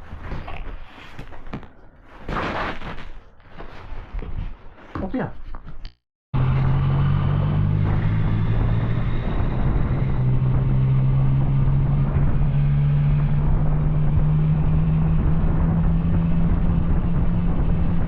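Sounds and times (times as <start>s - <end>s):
motorcycle engine running steadily: 6.4s - 18.0s.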